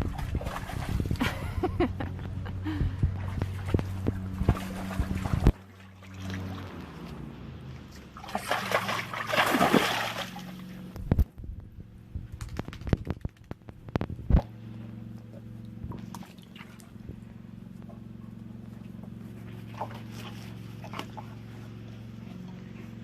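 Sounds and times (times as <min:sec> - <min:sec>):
water sloshing and splashing: 0:00.0 - 0:01.6, 0:03.1 - 0:11.1, 0:15.2 - 0:23.0.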